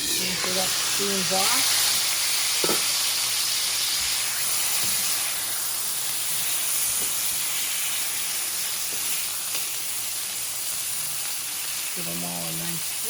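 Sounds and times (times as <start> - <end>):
steam hissing and sizzling in pan: 0.0 - 13.0.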